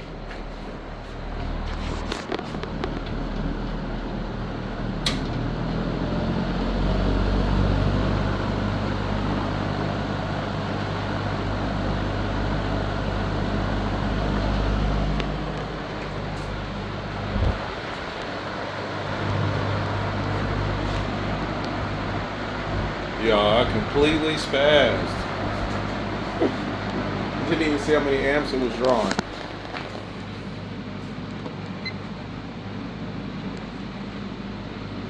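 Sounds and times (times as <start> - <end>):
box fan running: 0.0 - 35.0.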